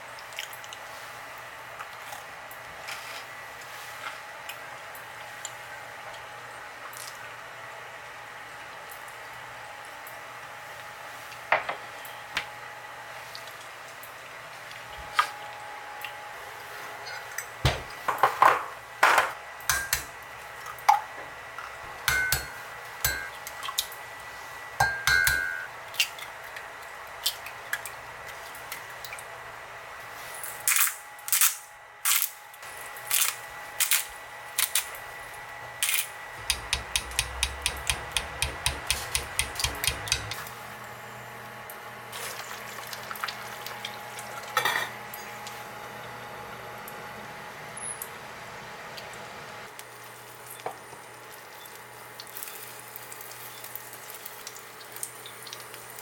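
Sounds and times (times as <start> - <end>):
low hum: 36.3 - 41.8
dishes and utensils clinking: 44.6 - 45.4.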